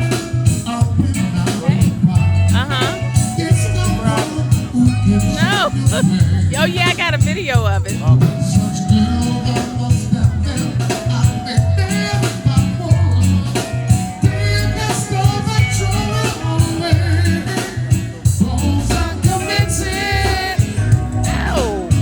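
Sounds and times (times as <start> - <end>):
reggae song with heavy bass: 0.0 - 22.0
person singing: 1.4 - 7.3, 21.2 - 22.0.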